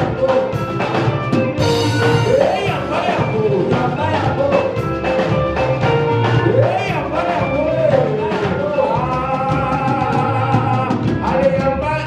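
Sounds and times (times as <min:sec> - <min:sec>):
drum kit beat: 0:00.0 - 0:12.0
live worship music: 0:00.0 - 0:12.0
singing: 0:01.6 - 0:04.9.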